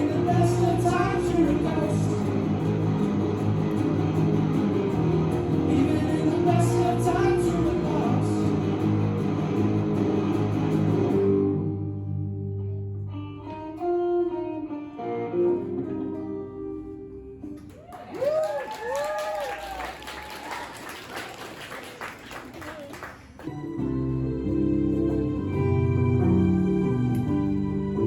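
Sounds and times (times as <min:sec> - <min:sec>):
guitar picking single notes: 0:00.0 - 0:17.7, 0:23.5 - 0:28.0
live band playing: 0:23.4 - 0:28.0.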